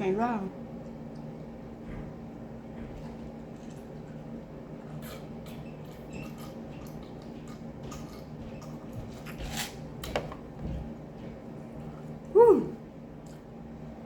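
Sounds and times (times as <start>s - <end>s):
steady low hum: 0.0s - 14.0s
wet chewing mouth sounds: 2.8s - 9.9s.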